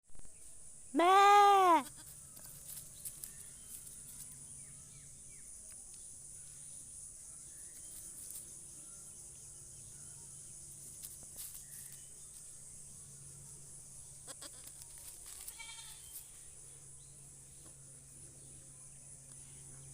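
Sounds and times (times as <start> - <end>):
insects droning: 0.1 - 19.9
goat bleating: 1.0 - 2.2, 14.2 - 14.7, 15.4 - 16.2.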